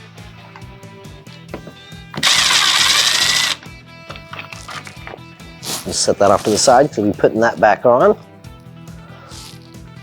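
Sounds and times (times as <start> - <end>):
cordless drill whining: 2.2 - 3.6.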